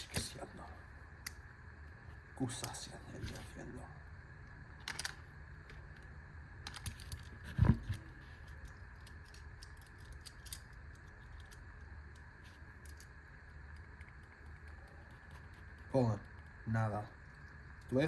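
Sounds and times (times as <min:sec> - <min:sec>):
small objects clicking and tapping: 0:06.6 - 0:16.6.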